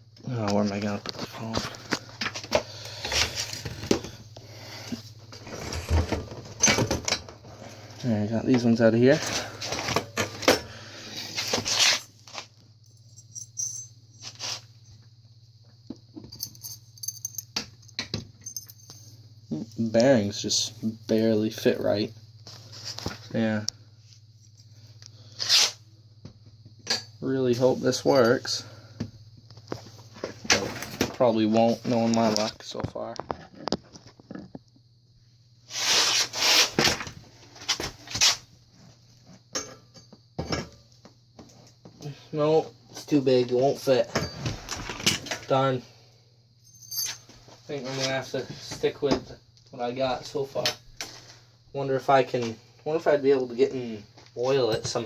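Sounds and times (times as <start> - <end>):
faint low hum: 0.0 - 35.7.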